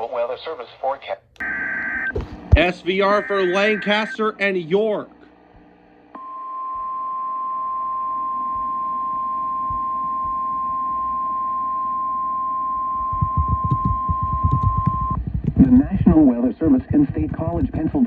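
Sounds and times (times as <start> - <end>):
steady high alarm tone: 2.9 - 4.3
faint low thumps: 13.0 - 18.0.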